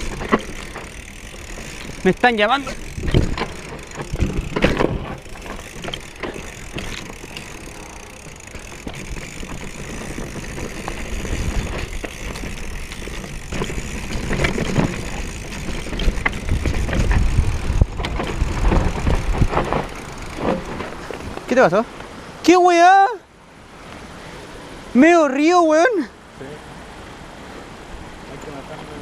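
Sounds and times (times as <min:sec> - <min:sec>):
bike frame and chain rattling: 0:00.0 - 0:21.8
bike tyres crunching over stones: 0:00.0 - 0:22.1.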